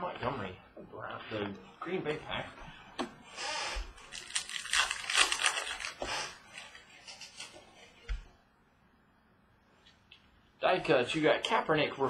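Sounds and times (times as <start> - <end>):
foil wrapper crinkling and tearing: 4.0 - 7.6.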